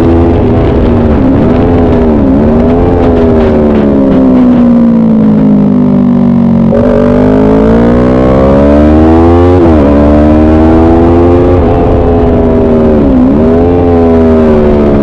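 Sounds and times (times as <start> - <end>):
motorcycle engine at speed: 0.0 - 15.0.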